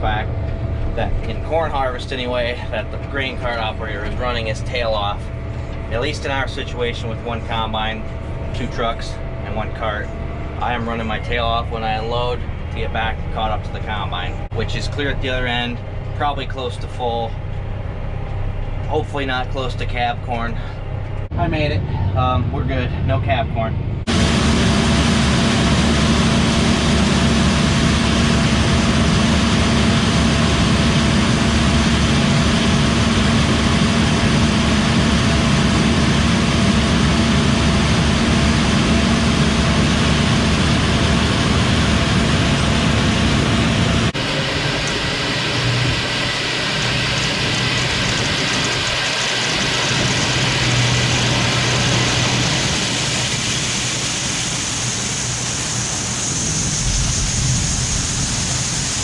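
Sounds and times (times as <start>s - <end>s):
tractor diesel engine droning: 0.0s - 59.0s
hissy running noise: 41.8s - 59.0s.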